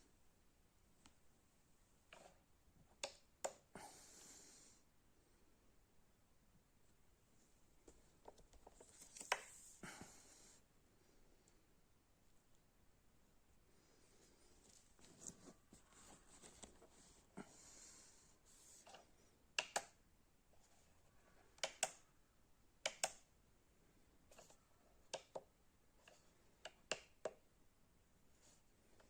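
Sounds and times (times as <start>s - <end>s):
soft rustling: 13.8s - 17.4s.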